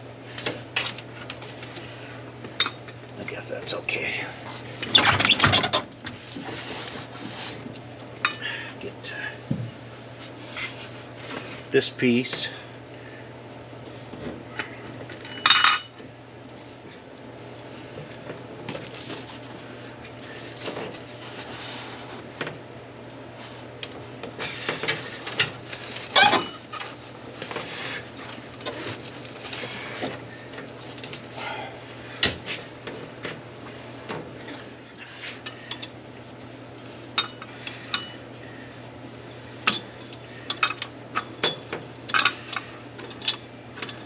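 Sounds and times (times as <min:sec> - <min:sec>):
steady low hum: 0:00.0 - 0:44.0
metal parts and tools clanking: 0:14.5 - 0:16.1, 0:24.6 - 0:29.6, 0:37.2 - 0:38.2, 0:39.7 - 0:44.0.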